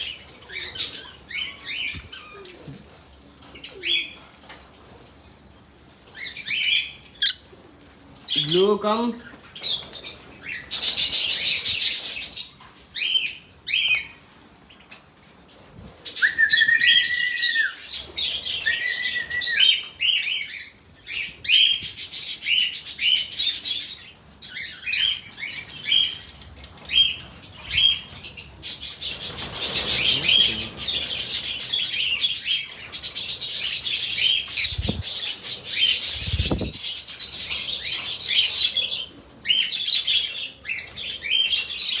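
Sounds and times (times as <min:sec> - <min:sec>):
lovebird chirping and chattering: 0:06.4 - 0:07.4, 0:28.9 - 0:37.6.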